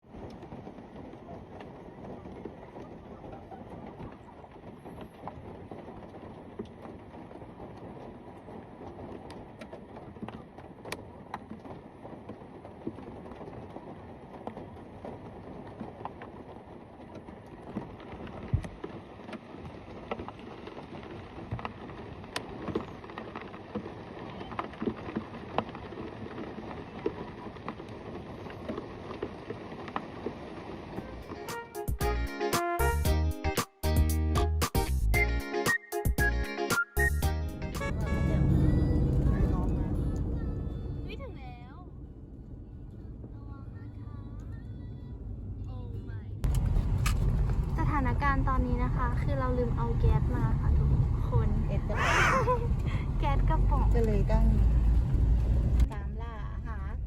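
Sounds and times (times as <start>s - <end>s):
steady rain falling: 0.0s - 31.6s
raindrops hitting close by: 0.0s - 32.2s, 46.4s - 57.0s.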